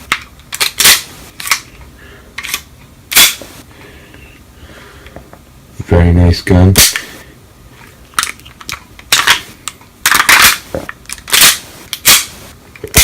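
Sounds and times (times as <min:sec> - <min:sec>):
pistol slide clacking and scraping: 0:00.1 - 0:01.8, 0:08.2 - 0:12.3.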